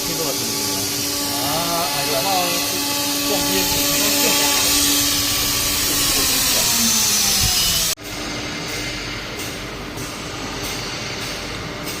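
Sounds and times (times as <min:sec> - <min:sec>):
router spindle hissing: 0:00.0 - 0:08.0
pulsing machine noise: 0:00.0 - 0:12.0.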